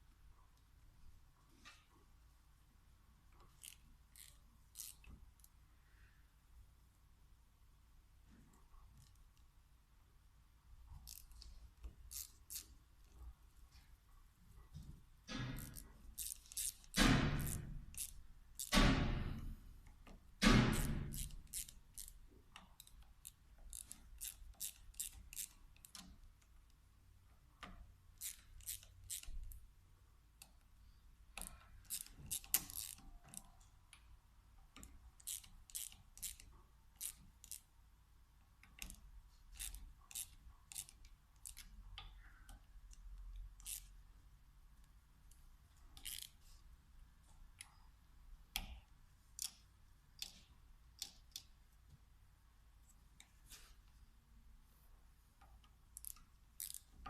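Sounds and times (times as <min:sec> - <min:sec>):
metal parts and tools clicking: 0:03.4 - 0:05.6, 0:11.0 - 0:13.2, 0:15.2 - 0:26.5, 0:27.6 - 0:29.6, 0:31.3 - 0:33.8, 0:34.7 - 0:37.7, 0:38.6 - 0:44.0, 0:45.9 - 0:46.4, 0:55.6 - 0:57.0.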